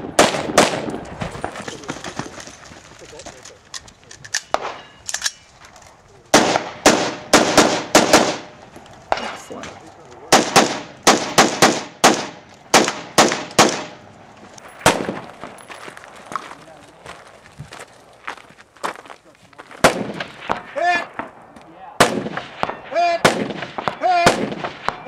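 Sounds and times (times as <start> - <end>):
rifle firing rapid shots: 0.0 - 1.0, 6.3 - 9.4, 10.3 - 14.0, 14.8 - 15.3, 19.8 - 21.3, 22.0 - 25.0.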